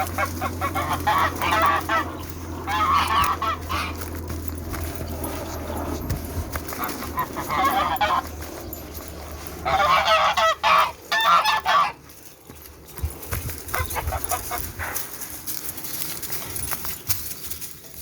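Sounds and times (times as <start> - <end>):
geese honking: 0.0 - 12.7, 13.7 - 15.0.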